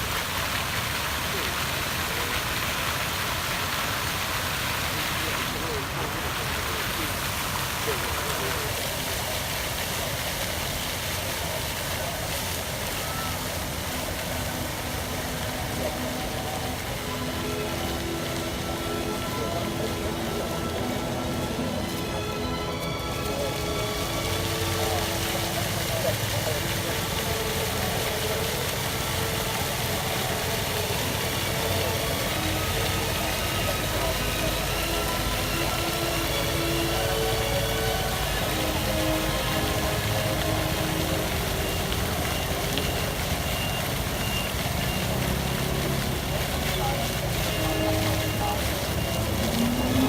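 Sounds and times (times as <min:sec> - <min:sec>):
fountain water jets spraying: 0:00.0 - 0:50.0.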